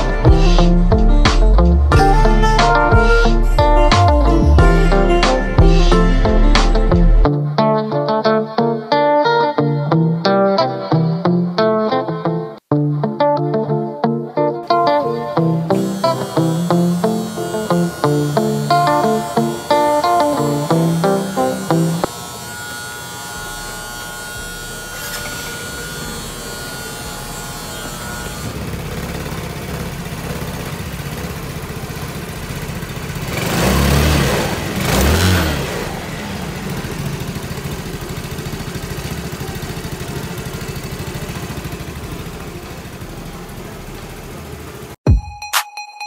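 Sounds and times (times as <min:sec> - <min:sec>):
scooter engine revving: 0:00.0 - 0:07.3, 0:14.7 - 0:45.0
scooter engine idling: 0:14.8 - 0:22.1, 0:24.4 - 0:45.0.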